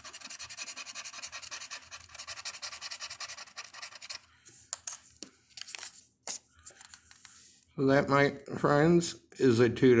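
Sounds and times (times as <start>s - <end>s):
lottery ticket being scratched: 0.0s - 4.2s.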